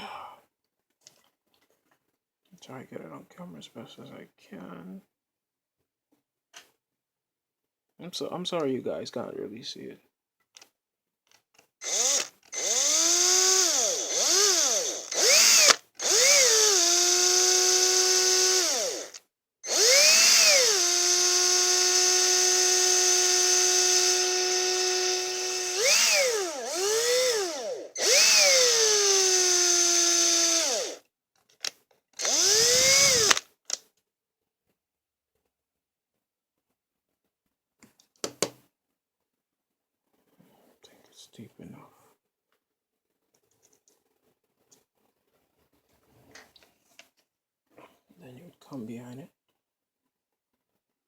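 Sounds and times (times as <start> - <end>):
small electric drill whining: 11.8 - 31.0, 32.2 - 33.4.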